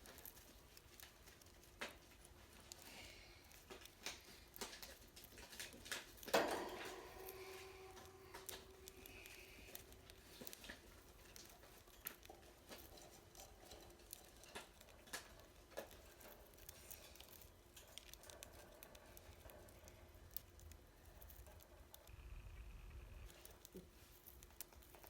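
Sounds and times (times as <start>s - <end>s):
bird beak husking seeds: 6.0s - 25.0s.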